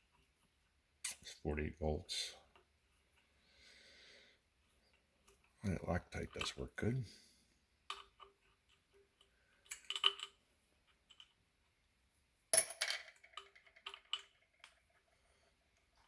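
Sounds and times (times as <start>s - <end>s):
metal parts clinking: 9.7s - 10.3s.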